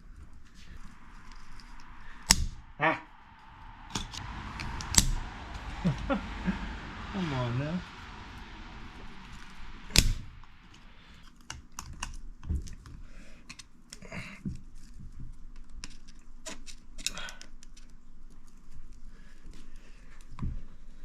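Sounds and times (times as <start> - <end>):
sharp metallic snap: 1.2 - 3.1.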